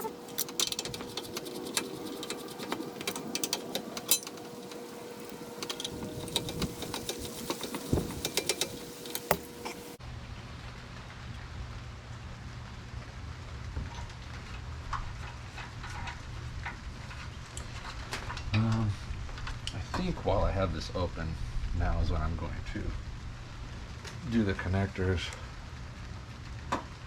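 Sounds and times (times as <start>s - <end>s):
small hard parts clicking: 0.0s - 9.8s
low steady hum: 0.0s - 27.0s.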